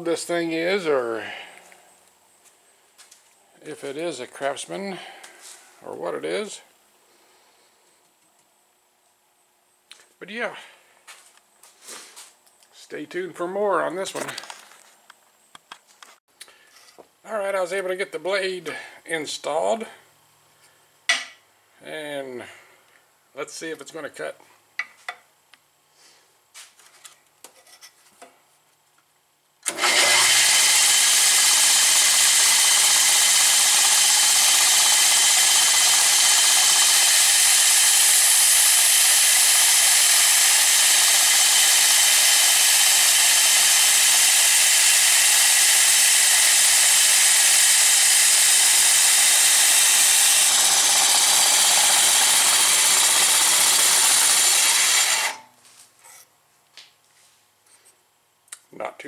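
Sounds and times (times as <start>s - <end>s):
bandsaw running and cutting: 29.6s - 55.5s.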